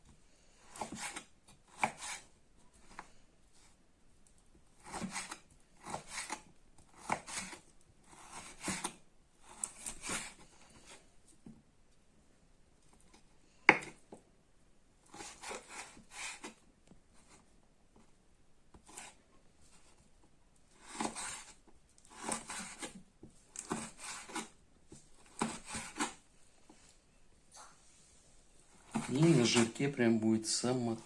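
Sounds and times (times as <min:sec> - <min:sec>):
knife slicing on cutting board: 0:00.7 - 0:02.2, 0:20.8 - 0:23.0, 0:25.3 - 0:26.2, 0:28.8 - 0:29.8.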